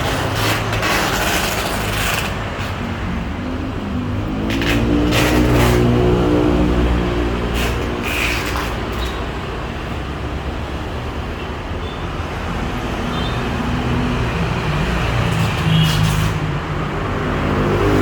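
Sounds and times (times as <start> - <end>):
low vehicle engine: 0.0 - 11.2
road traffic: 0.0 - 18.0.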